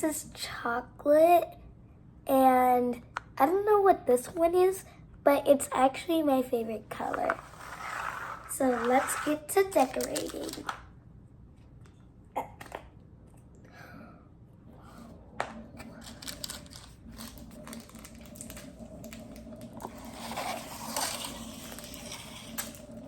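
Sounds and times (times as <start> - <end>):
plastic packets crinkling and rustling: 9.8 - 10.8, 15.8 - 23.0.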